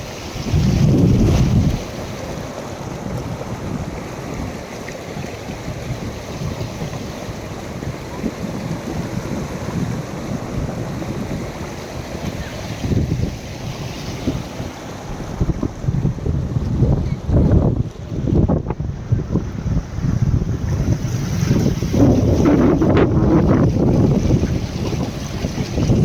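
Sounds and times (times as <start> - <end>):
waterfall roaring: 0.0 - 19.4
wind buffeting microphone: 0.0 - 26.0.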